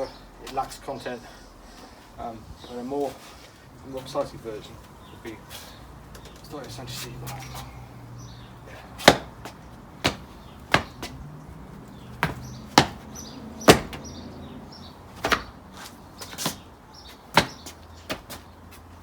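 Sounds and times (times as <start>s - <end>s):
feet thudding on floor: 9.0s - 11.2s, 12.2s - 14.1s, 15.2s - 16.6s, 17.3s - 18.4s.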